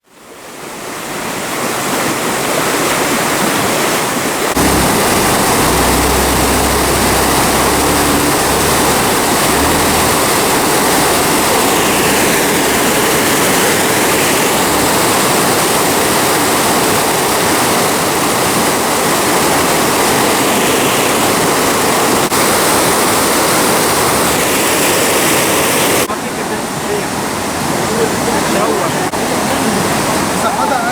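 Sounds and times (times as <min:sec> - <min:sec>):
waterfall rushing: 0:01.2 - 0:30.9
low rumble: 0:04.6 - 0:15.6.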